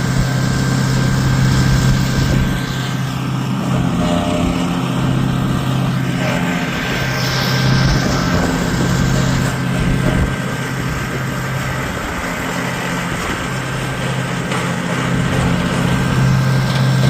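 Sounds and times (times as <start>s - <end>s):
small gas engine running: 0.0s - 17.0s.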